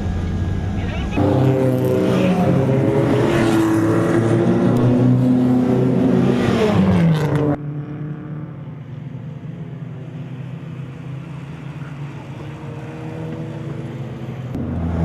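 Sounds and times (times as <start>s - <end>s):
dull engine note: 0.0s - 2.8s
car engine running hard: 0.0s - 15.0s.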